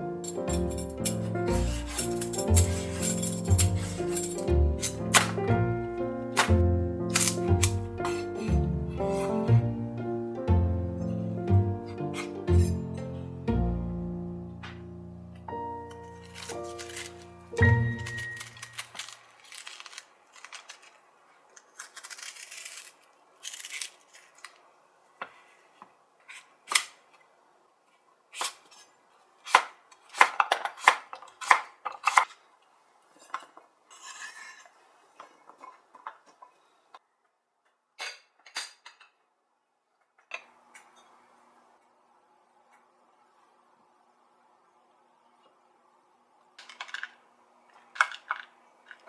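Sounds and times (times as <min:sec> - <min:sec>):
cookware clinking and scraping: 0:00.3 - 0:05.5.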